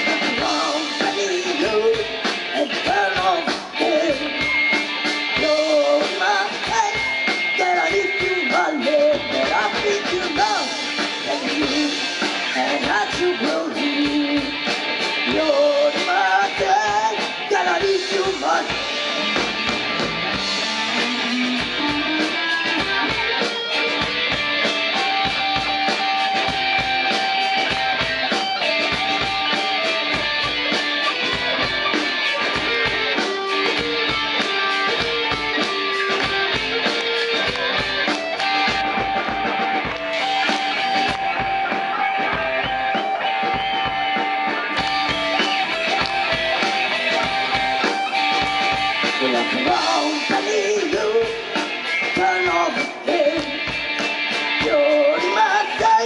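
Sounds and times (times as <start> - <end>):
drum kit beat: 0.0 - 56.0
electric guitar held notes: 18.7 - 56.0.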